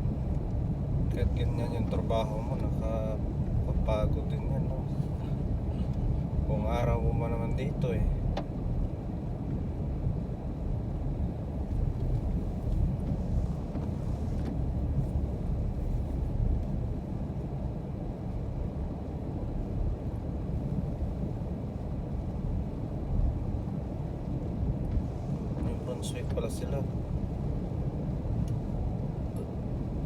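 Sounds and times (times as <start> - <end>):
car driving rumble: 0.0 - 30.0.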